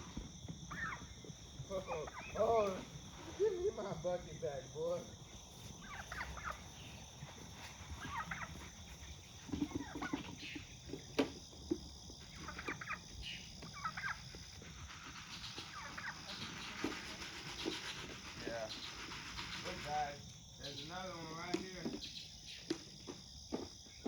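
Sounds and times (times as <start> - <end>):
poultry clucking: 0.0 - 3.4, 5.2 - 20.0.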